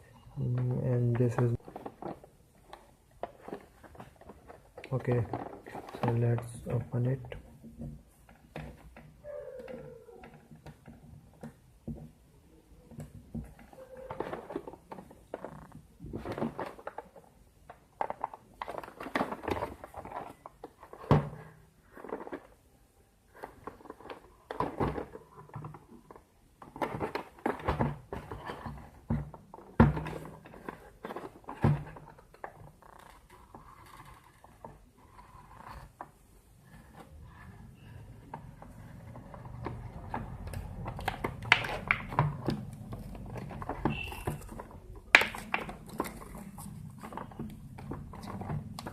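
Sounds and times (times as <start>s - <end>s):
packaging crinkling and scraping: 0.4s - 7.2s, 13.5s - 48.9s
package knocks and thumps: 39.4s - 48.9s.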